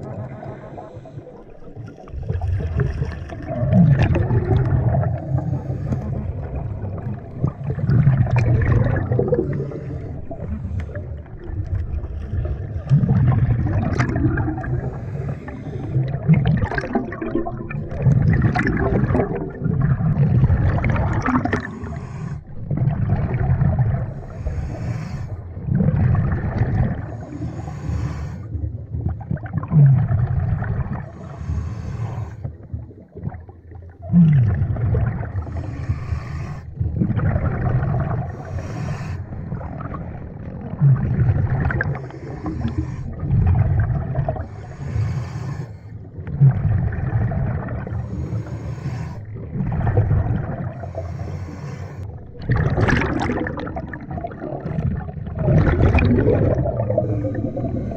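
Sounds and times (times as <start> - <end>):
exhaled bubbles gurgling: 0.0 - 57.9
regulator inhale hiss: 14.8 - 16.1, 21.7 - 22.5, 24.2 - 25.5, 27.2 - 28.5, 31.2 - 32.5, 35.5 - 36.7, 38.3 - 39.5, 44.4 - 46.0, 48.0 - 49.3, 50.8 - 52.2.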